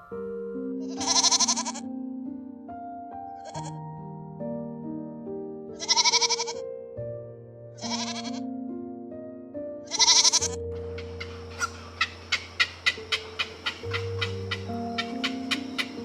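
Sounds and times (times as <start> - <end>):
slow sustained background music: 0.0 - 16.0
quavering bleats: 0.9 - 1.9, 3.4 - 3.8, 5.8 - 6.6, 7.8 - 8.4, 9.9 - 10.6.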